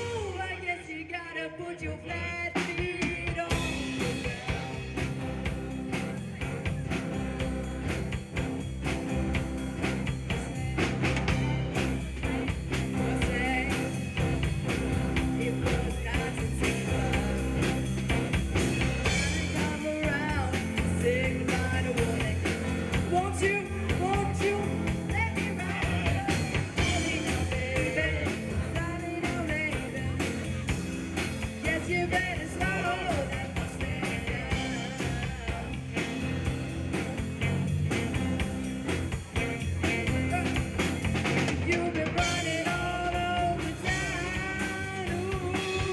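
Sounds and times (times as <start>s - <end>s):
rock band playing: 0.0s - 0.6s, 2.6s - 45.9s
person singing: 10.3s - 36.4s, 39.3s - 45.9s.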